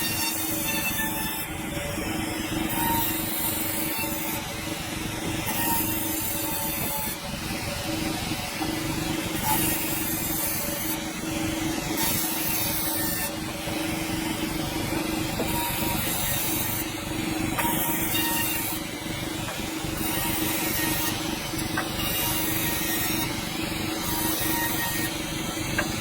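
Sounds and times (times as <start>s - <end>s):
sawmill hum: 0.0s - 26.0s
saw blade cutting log: 2.8s - 4.5s, 9.3s - 11.0s, 11.9s - 13.4s, 14.9s - 17.0s, 17.6s - 25.2s.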